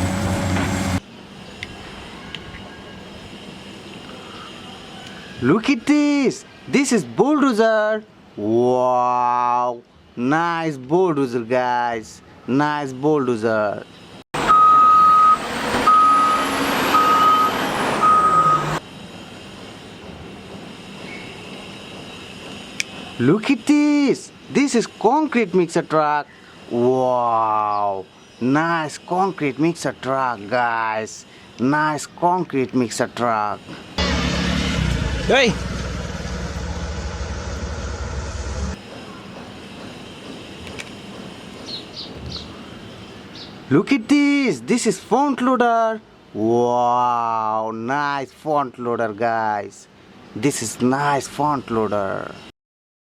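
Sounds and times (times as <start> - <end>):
bulldozer engine running: 0.0 - 1.0, 14.4 - 18.8, 34.0 - 38.9
vehicle engine rumbling: 0.0 - 4.3, 33.8 - 39.2
reversing alarm beeping: 14.4 - 18.8.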